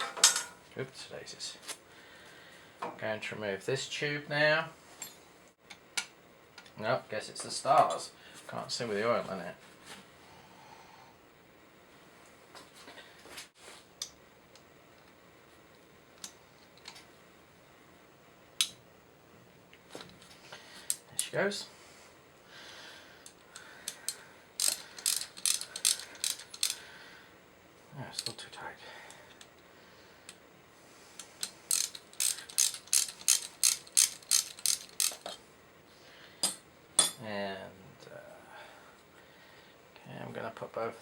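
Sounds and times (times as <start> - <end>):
metallic clicks of hand tools: 23.2 - 26.8, 31.2 - 35.4.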